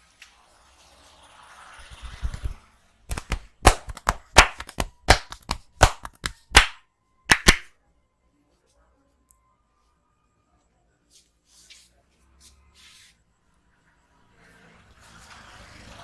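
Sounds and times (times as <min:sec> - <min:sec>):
hands slapping in head massage: 0:02.2 - 0:07.7.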